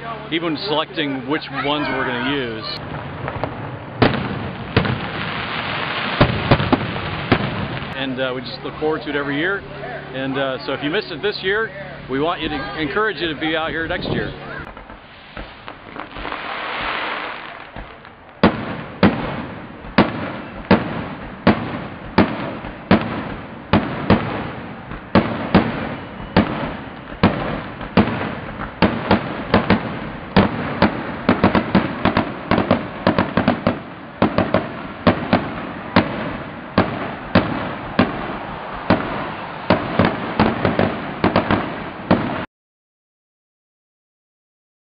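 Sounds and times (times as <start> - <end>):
fireworks shells bursting: 14.6 - 42.5
rushing noise: 36.6 - 41.2.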